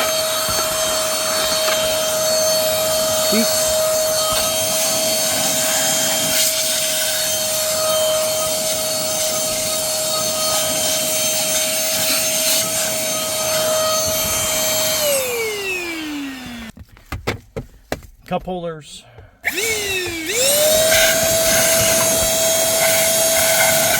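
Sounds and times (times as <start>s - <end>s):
suction air rushing: 0.0s - 16.0s
vacuum motor whine: 0.0s - 16.8s, 19.4s - 23.9s.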